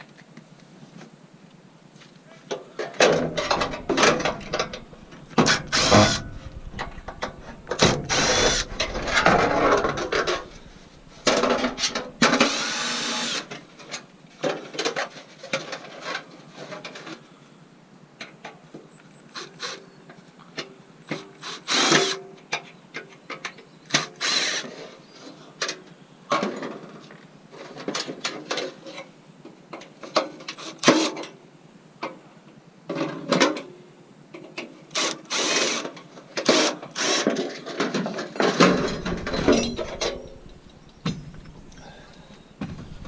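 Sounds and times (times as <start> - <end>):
scrap metal clanking and scraping: 2.8 - 17.1, 35.5 - 43.0.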